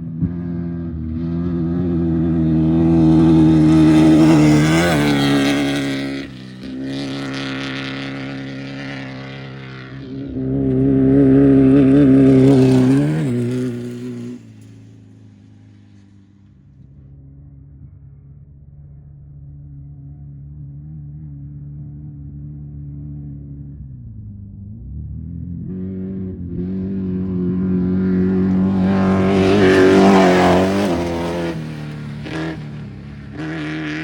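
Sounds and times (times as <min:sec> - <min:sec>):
race vehicles passing at speed: 0:00.0 - 0:17.0, 0:24.8 - 0:34.0.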